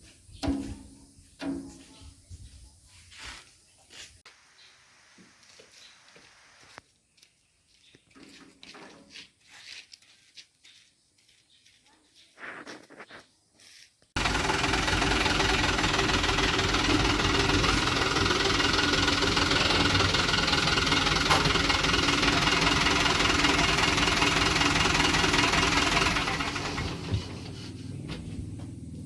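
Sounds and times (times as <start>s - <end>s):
engine running: 14.2s - 29.0s.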